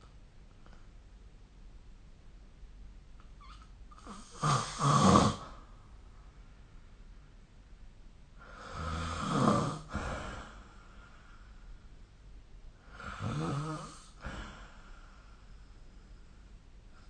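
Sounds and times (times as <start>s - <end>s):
person snoring: 4.0s - 5.6s, 8.5s - 10.6s, 12.9s - 14.6s.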